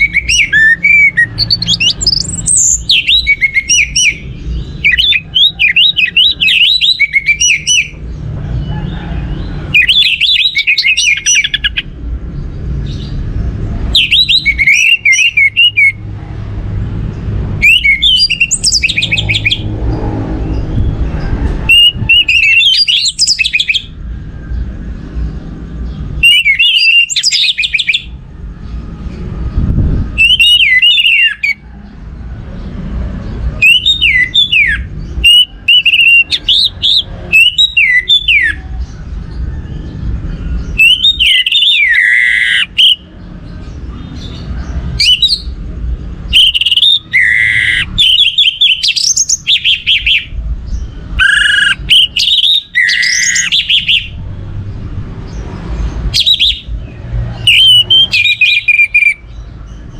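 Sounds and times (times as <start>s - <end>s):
thrush singing whistled notes: 0.0s - 8.1s, 9.4s - 12.0s, 13.8s - 16.1s, 17.6s - 28.2s, 30.0s - 31.6s, 33.5s - 45.6s, 46.2s - 54.2s, 55.3s - 59.9s.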